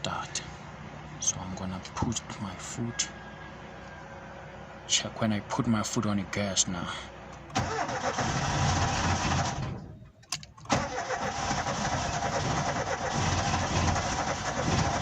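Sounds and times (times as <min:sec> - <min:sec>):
car engine cranking and starting: 0:07.3 - 0:15.0.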